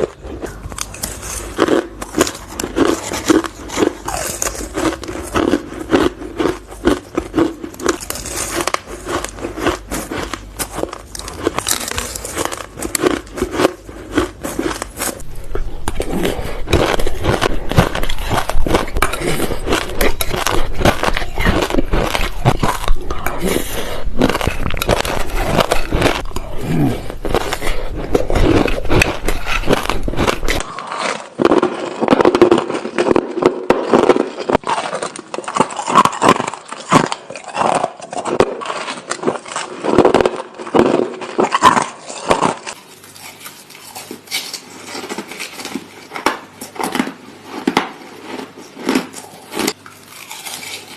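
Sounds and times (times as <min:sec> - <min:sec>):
ice being crunched and chewed: 0:00.0 - 0:50.9.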